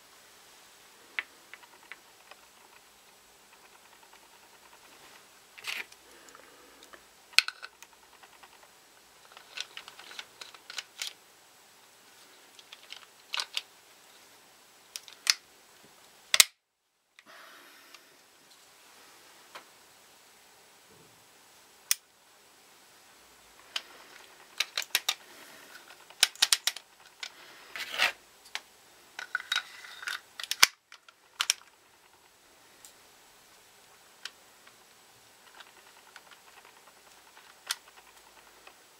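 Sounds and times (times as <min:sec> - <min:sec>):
metallic clicks of pistol parts: 0:16.3 - 0:16.6, 0:29.3 - 0:31.7.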